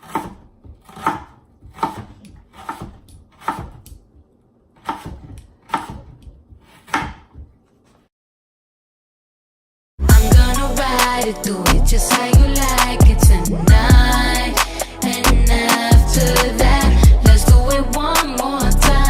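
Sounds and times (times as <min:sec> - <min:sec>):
knife chopping onion: 0:00.0 - 0:04.2, 0:04.8 - 0:07.6.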